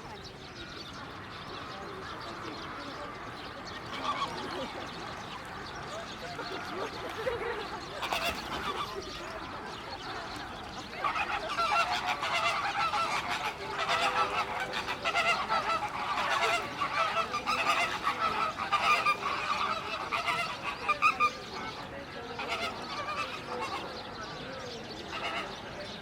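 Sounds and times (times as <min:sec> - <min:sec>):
flock of geese honking: 0:00.0 - 0:26.0.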